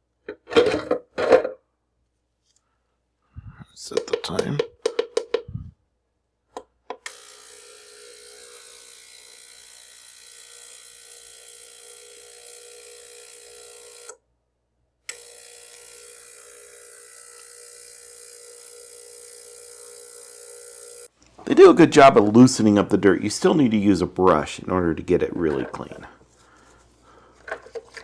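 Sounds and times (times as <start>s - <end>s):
ultrasonic cleaner humming: 15.1s - 28.0s.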